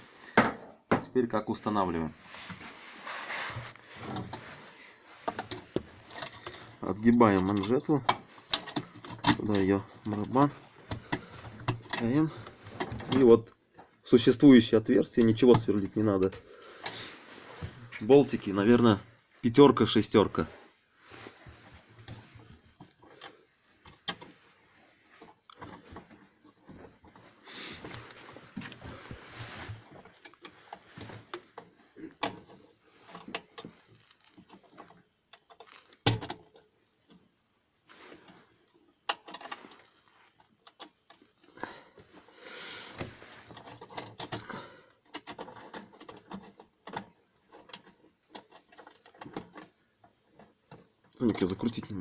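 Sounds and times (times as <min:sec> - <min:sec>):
metal parts clicking and clattering: 0:05.2 - 0:13.4, 0:22.0 - 0:24.3, 0:29.8 - 0:37.1, 0:38.9 - 0:41.6, 0:43.4 - 0:52.0
metallic clicks of bolts and tools: 0:22.8 - 0:24.3.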